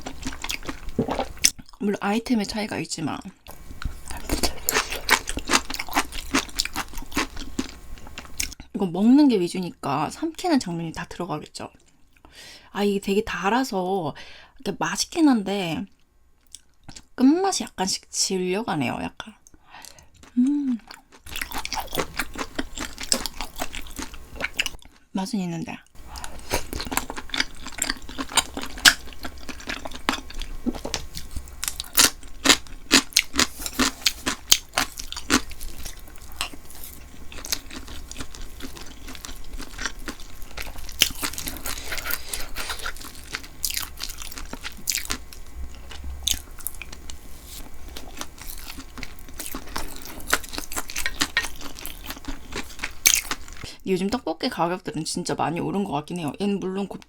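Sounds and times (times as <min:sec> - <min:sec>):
person chewing wetly: 0:00.0 - 0:01.8, 0:03.5 - 0:08.6, 0:19.8 - 0:25.0, 0:26.0 - 0:53.7.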